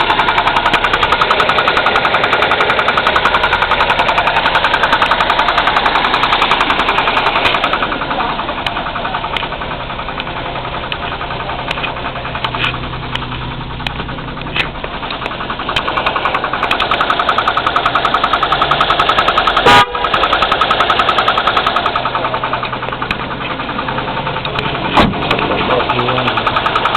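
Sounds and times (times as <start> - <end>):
engine running with clatter: 0.0 - 26.9
short sharp bang: 25.0 - 25.2.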